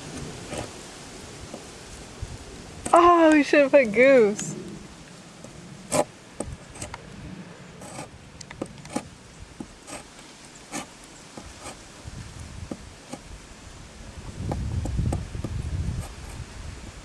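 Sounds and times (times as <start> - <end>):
short scraping strokes: 7.8 - 11.9.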